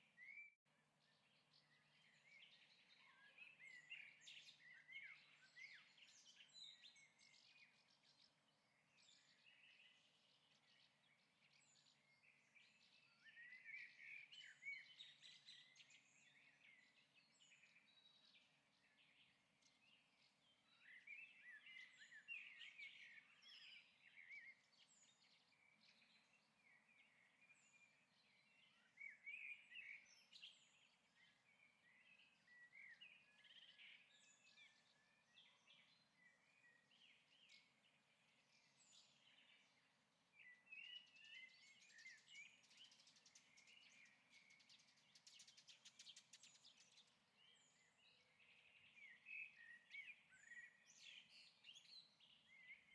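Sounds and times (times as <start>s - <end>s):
faint bird chirping: 0.0s - 52.9s.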